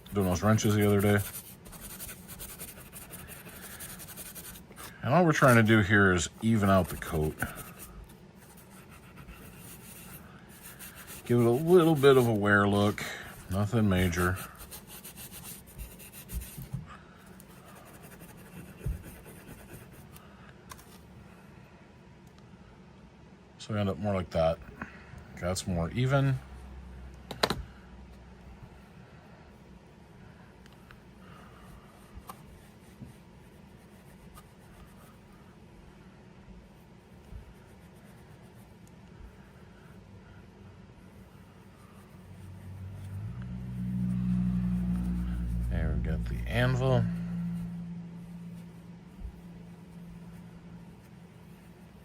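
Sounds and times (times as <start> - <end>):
steel wool scratching metal: 0.0 - 4.7, 8.5 - 16.3.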